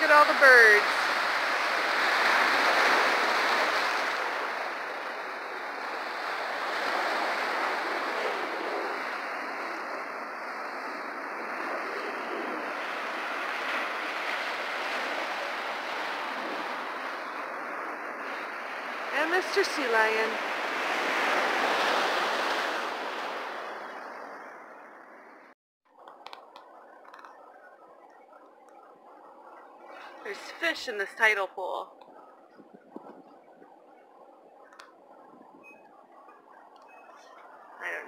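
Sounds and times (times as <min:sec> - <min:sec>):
surf washing over rocky shore: 0:00.0 - 0:24.0.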